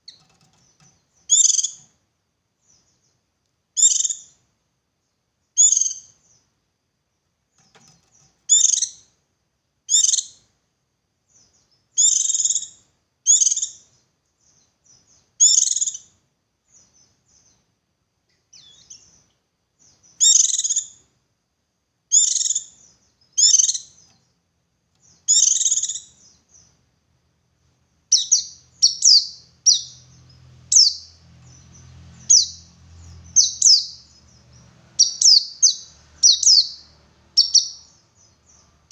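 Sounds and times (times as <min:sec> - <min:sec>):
faint low hum: 0:00.0 - 0:38.9
bird singing high chirpy phrases: 0:01.2 - 0:01.9, 0:03.8 - 0:04.4, 0:05.6 - 0:06.4, 0:08.2 - 0:09.1, 0:09.9 - 0:10.4, 0:11.4 - 0:16.1, 0:19.8 - 0:21.0, 0:22.1 - 0:24.2, 0:25.0 - 0:26.8, 0:28.1 - 0:38.9.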